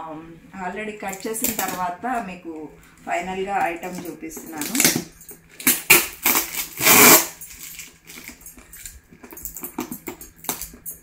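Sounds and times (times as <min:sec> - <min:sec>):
packaging rustling: 0:03.8 - 0:10.0
light metallic clinks: 0:07.4 - 0:11.0.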